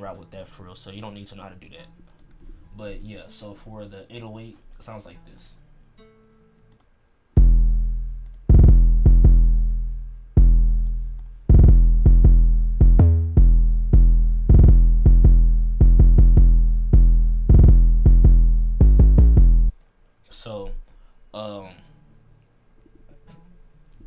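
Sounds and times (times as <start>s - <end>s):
deep sub-bass notes: 7.4s - 19.7s.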